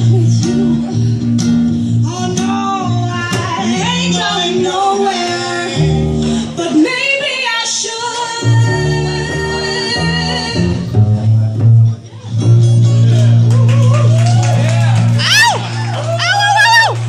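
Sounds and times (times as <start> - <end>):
plucked double bass: 0.0 - 4.3, 8.5 - 13.7
acoustic guitar: 0.0 - 17.0
woman singing: 2.0 - 10.9.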